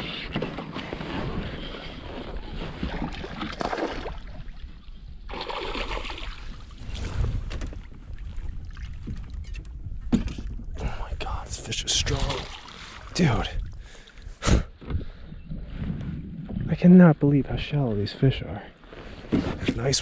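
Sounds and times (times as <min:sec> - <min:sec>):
water splashing at kayak: 0:00.0 - 0:10.6, 0:11.9 - 0:14.9
wind buffeting microphone: 0:06.1 - 0:17.6.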